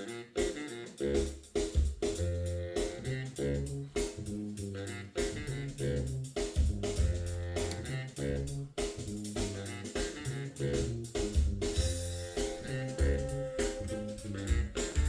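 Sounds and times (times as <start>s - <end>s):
bass guitar: 0.9s - 15.0s.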